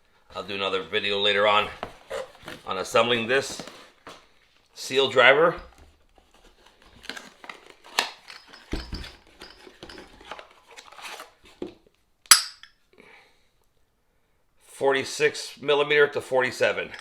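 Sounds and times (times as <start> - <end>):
packaging rustle: 6.2 - 11.6
metal tools clinking and rattling: 8.2 - 10.9, 12.3 - 12.7, 16.8 - 17.0.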